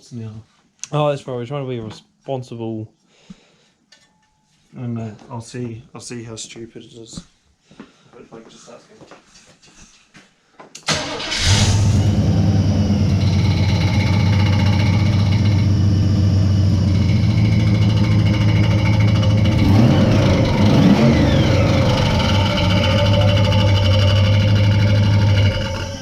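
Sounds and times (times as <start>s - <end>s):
engine cranking and starting: 10.8s - 15.8s, 16.9s - 26.0s
engine idling: 10.9s - 26.0s.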